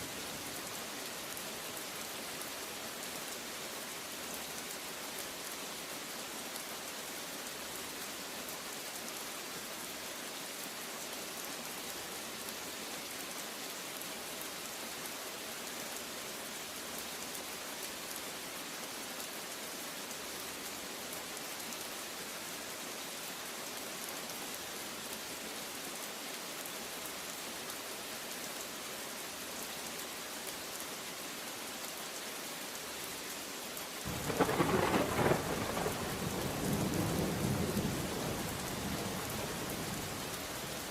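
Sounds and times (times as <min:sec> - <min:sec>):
heavy rain hissing: 0:33.9 - 0:40.9
rumble of thunder: 0:34.1 - 0:40.0.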